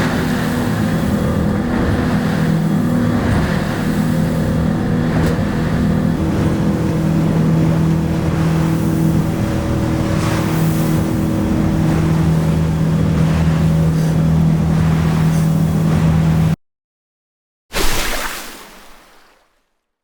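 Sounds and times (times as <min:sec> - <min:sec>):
boat engine droning: 0:00.0 - 0:16.6
wind: 0:00.0 - 0:16.6
rushing water: 0:17.7 - 0:19.7.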